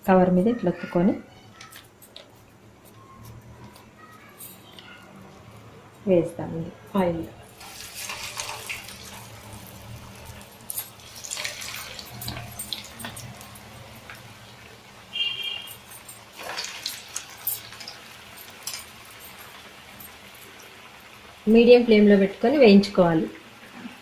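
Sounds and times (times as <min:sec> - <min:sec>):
fritters sizzling in hot oil: 0:06.9 - 0:24.0.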